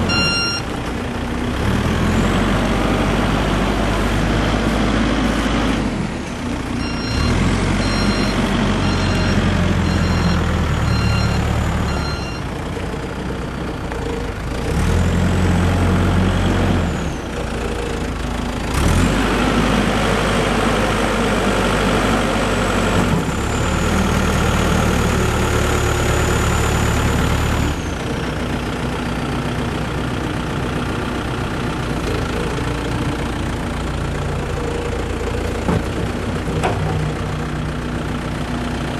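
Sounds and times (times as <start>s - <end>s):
diesel engine revving: 0.0s - 38.9s
reversing alarm beeping: 0.1s - 0.7s, 6.8s - 12.5s.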